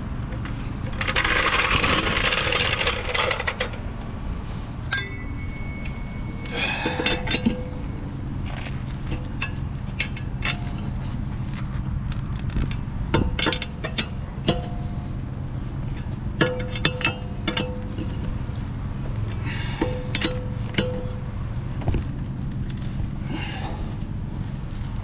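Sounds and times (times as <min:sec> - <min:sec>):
steady low rumble: 0:00.0 - 0:25.0
ringing metal strike: 0:04.9 - 0:11.0, 0:12.7 - 0:15.2, 0:15.8 - 0:18.2, 0:19.5 - 0:21.4
metal tools clinking and knocking: 0:04.9 - 0:11.6, 0:12.4 - 0:18.7, 0:19.3 - 0:21.4.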